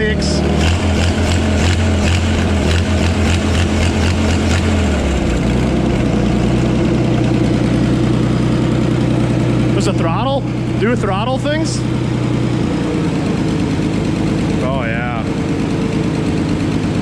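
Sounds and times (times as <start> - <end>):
tractor engine idling: 0.0 - 17.0.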